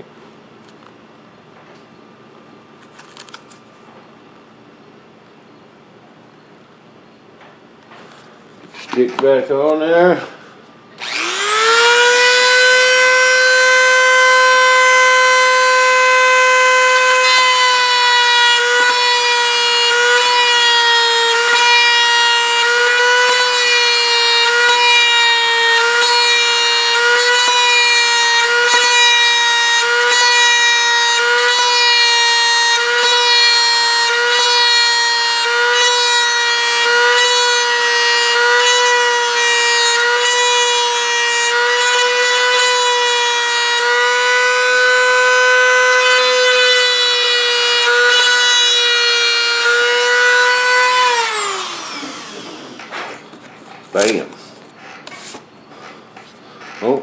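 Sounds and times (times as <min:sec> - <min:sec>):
rotary tool high-pitched whine: 0:11.0 - 0:54.3.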